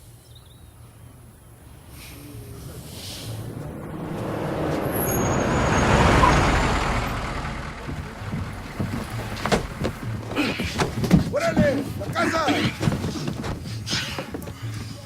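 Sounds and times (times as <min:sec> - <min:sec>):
vehicle driving past: 0:01.6 - 0:10.2.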